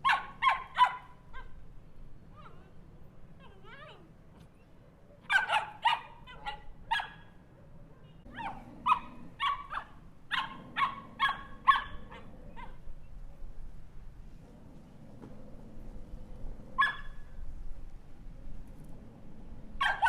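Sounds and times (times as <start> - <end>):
small dog barking: 0.0 - 1.6, 5.2 - 7.3, 8.2 - 12.8, 16.8 - 17.3, 19.8 - 20.0.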